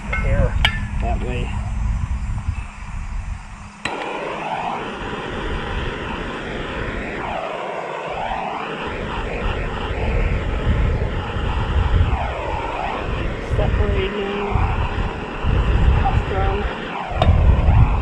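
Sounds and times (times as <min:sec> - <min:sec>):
propane torch hissing: 0:00.0 - 0:18.0.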